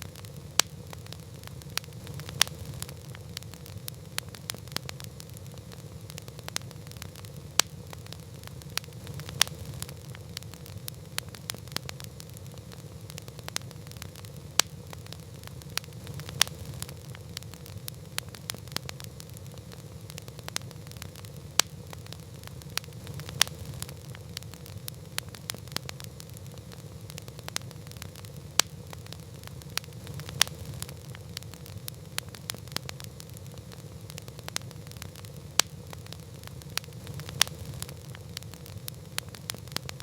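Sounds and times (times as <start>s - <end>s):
campfire crackling and popping: 0.0s - 40.0s.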